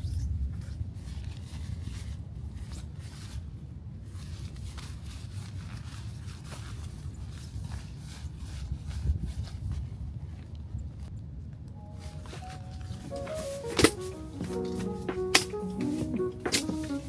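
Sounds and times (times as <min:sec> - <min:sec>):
rustling and scraping of gear: 0:00.6 - 0:11.1.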